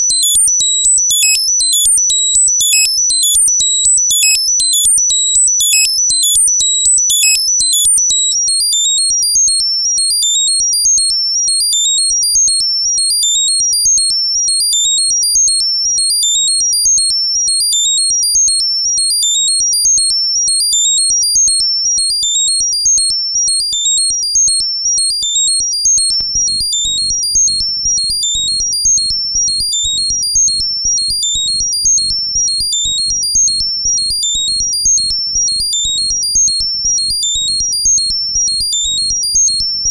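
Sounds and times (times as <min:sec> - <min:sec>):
high synthesizer bleeps: 0:00.0 - 0:08.6.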